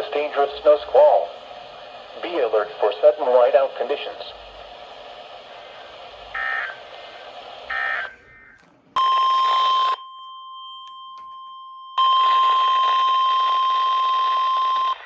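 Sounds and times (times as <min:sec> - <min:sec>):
steady alarm tone: 0:06.3 - 0:06.8, 0:07.7 - 0:15.0.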